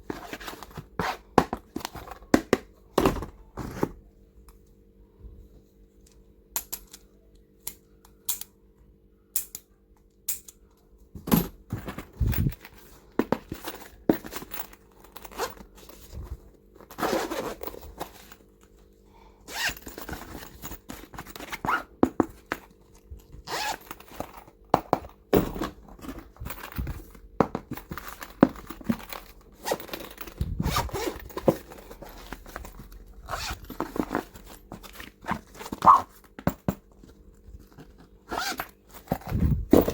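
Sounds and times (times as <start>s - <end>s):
faint steady hum: 0.0s - 39.9s
scraping and rustling: 11.7s - 18.5s, 25.4s - 39.9s.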